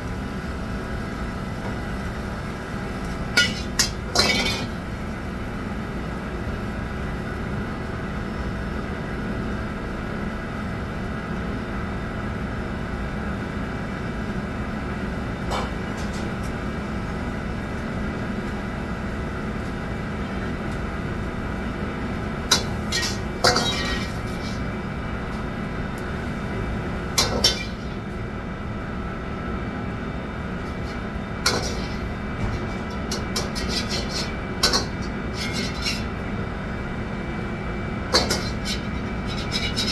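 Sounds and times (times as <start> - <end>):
kitchen equipment humming: 0.0 - 5.8, 21.8 - 39.9
dishes and utensils clinking: 3.4 - 4.8, 22.5 - 24.7, 27.2 - 28.0, 30.7 - 36.1, 38.2 - 39.9.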